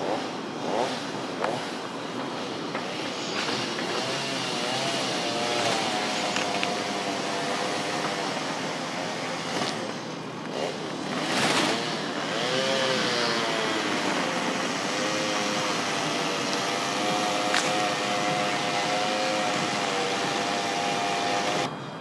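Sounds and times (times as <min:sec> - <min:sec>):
road noise: 0:00.0 - 0:22.0
car engine humming: 0:12.0 - 0:22.0.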